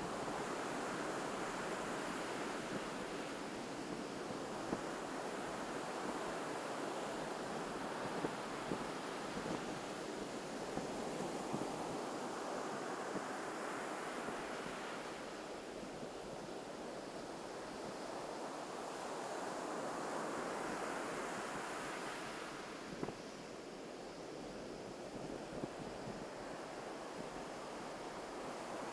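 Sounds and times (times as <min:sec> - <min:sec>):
wind on microphone: 0:00.0 - 0:16.6
ocean surf on beach: 0:00.0 - 0:28.9.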